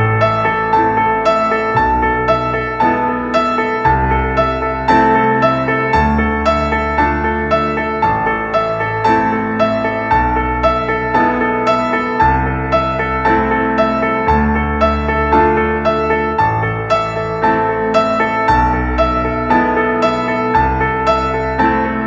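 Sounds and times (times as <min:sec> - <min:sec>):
bass notes: 0:00.0 - 0:22.0
piano repeating pattern: 0:00.0 - 0:22.0.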